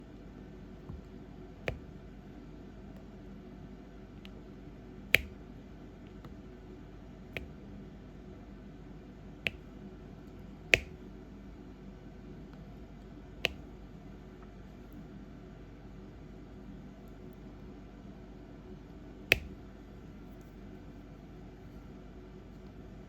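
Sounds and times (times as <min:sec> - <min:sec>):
pen tapping sharp clicks: 0:05.2 - 0:05.4, 0:09.5 - 0:09.7, 0:10.8 - 0:11.0, 0:13.4 - 0:13.7, 0:19.3 - 0:19.6.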